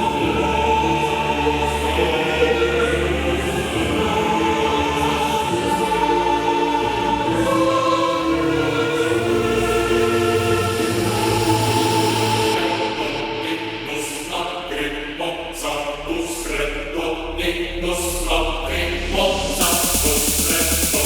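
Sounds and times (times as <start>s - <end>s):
choir-like sustained voices: 0.0s - 21.0s
electronic dance music: 7.7s - 14.2s, 19.1s - 21.0s.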